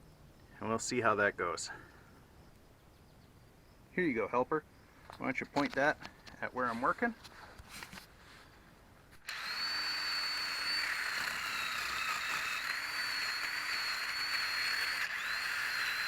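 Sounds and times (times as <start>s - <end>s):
wire brush power tool whining: 9.2s - 16.0s.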